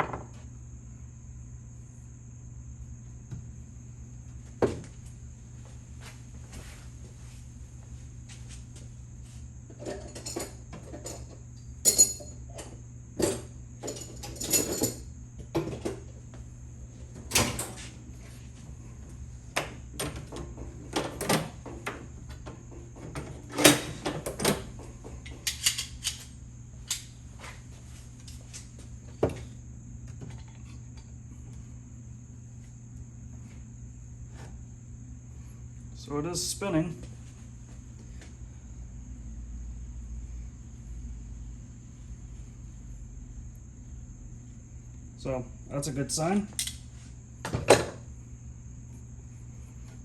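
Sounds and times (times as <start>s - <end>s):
steady electrical hum: 0.0s - 50.0s
metal parts clicking and clinking: 11.8s - 12.3s, 13.8s - 15.0s, 25.2s - 26.3s.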